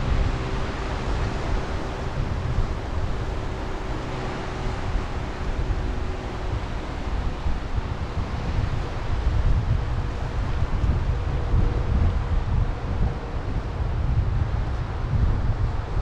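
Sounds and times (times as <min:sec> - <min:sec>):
sea waves washing on shore: 0:00.0 - 0:11.2
wind rumbling on microphone: 0:00.0 - 0:16.0.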